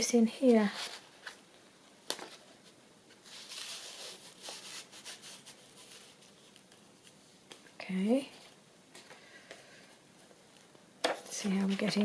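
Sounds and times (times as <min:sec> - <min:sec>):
paper rustling: 0:00.4 - 0:01.4, 0:02.1 - 0:07.6, 0:11.1 - 0:12.0.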